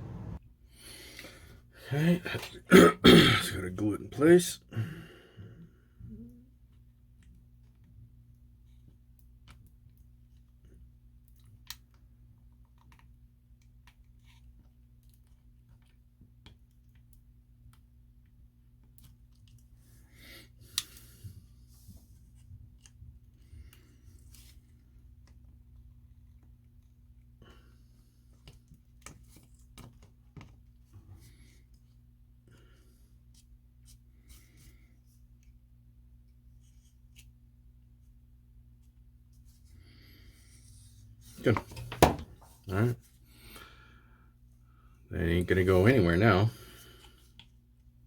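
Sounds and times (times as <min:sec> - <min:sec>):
low steady hum: 0:00.0 - 0:00.4
low electrical hum: 0:00.0 - 0:48.0.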